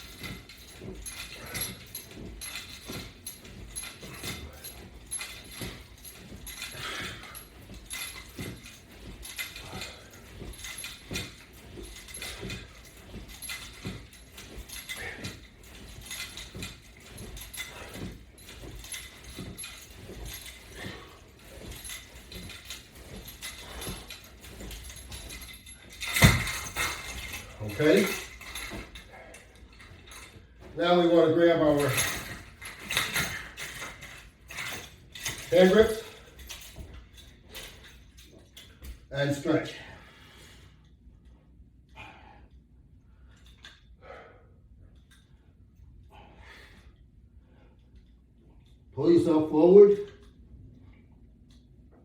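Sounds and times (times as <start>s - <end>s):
straps and metal hardware clicking: 0.0s - 39.9s, 43.3s - 43.9s.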